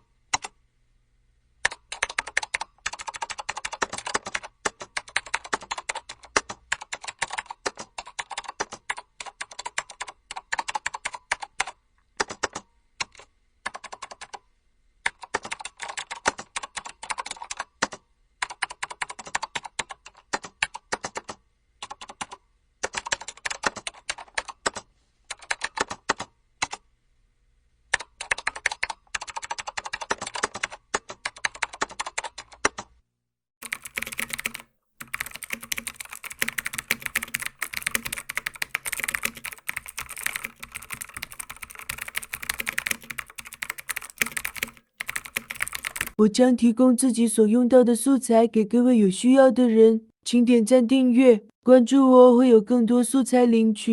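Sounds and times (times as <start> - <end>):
brighter keyboard typing: 1.6 - 14.4, 15.1 - 26.8, 27.9 - 32.9, 33.6 - 46.2
fast typing on keyboard: 1.6 - 14.4, 15.0 - 26.8, 27.9 - 32.9, 33.6 - 46.2.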